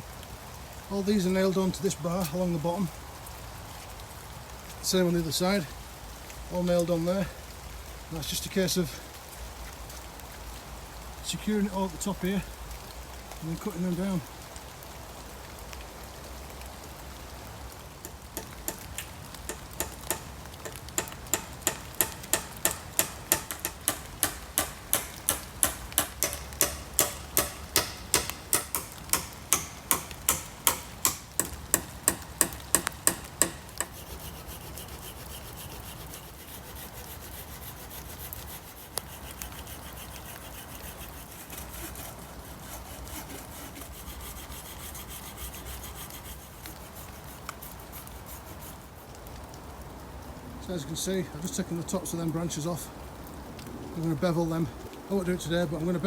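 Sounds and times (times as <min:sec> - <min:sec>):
hand saw cutting wood: 0:18.0 - 0:49.2.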